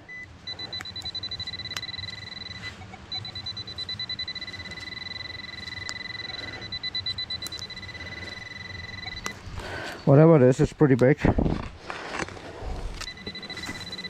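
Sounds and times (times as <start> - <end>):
metal detector tone: 0.1 - 9.4, 13.0 - 14.0.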